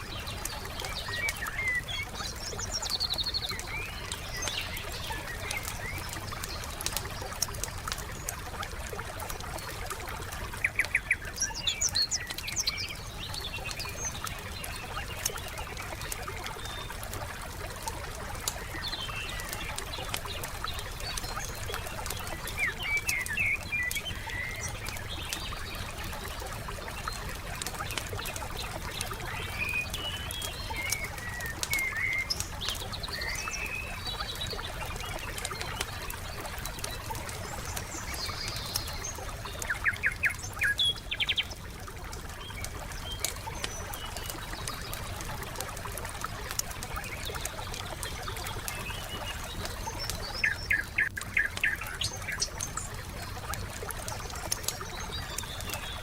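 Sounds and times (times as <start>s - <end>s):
songbirds chirping: 0.0s - 56.0s
wood fire crackling: 0.1s - 56.0s.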